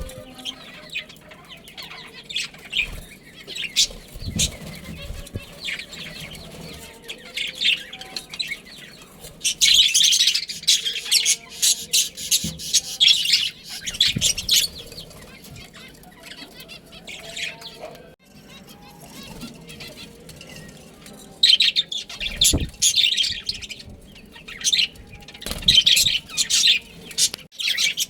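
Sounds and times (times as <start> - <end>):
wings fluttering: 0.0 - 0.6, 2.7 - 7.0, 18.6 - 27.5
budgerigars chirping: 0.0 - 18.0.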